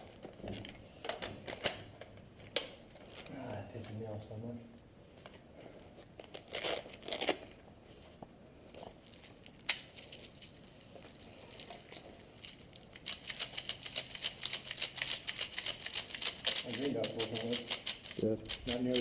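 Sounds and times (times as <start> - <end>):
rustling: 5.1 - 19.0
airsoft gear clicking: 13.0 - 19.0.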